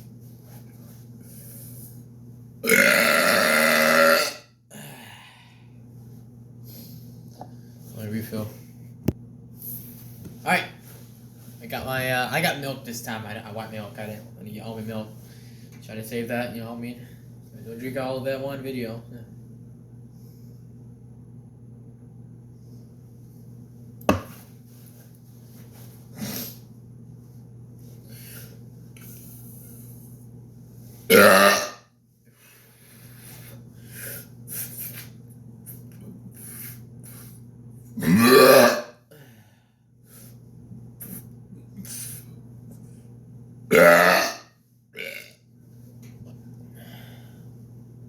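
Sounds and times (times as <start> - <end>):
steady low hum: 0.0 - 48.0
man burping loudly: 2.6 - 4.4, 31.1 - 31.8, 38.0 - 38.9, 43.7 - 44.4, 45.0 - 45.4.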